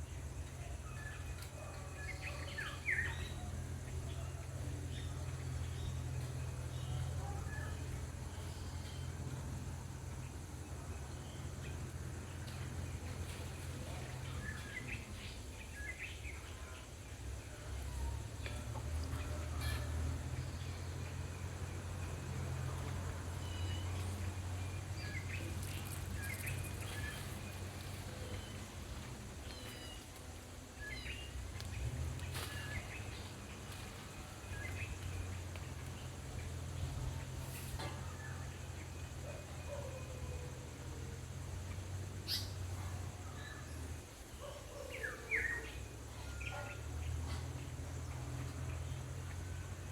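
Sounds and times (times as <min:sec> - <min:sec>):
birds chirping: 0:00.0 - 0:49.9.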